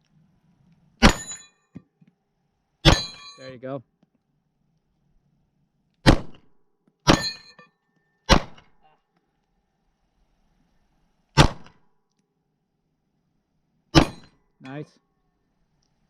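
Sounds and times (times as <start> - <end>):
metallic ring of steel target: 1.0 - 1.6, 2.8 - 3.6, 7.1 - 8.4, 14.0 - 14.4
gunshots: 6.0 - 6.4, 8.3 - 8.7, 11.4 - 11.8.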